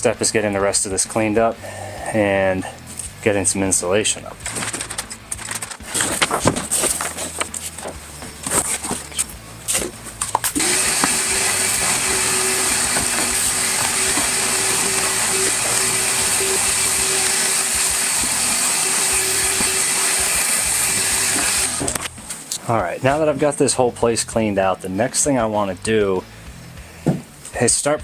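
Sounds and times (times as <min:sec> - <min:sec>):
clattering knocks of objects: 0:04.4 - 0:14.9
shop vacuum running: 0:05.8 - 0:22.3.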